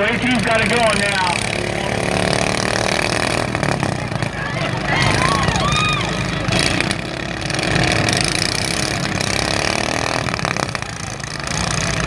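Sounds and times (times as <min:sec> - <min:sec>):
lawn mower engines revving: 0:00.0 - 0:12.0.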